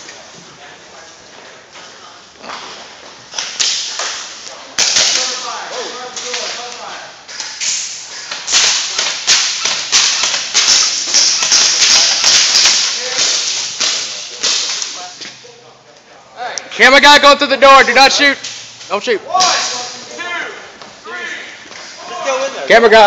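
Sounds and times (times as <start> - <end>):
airsoft guns firing: 7.5 - 14.8
voices: 12.8 - 23.0.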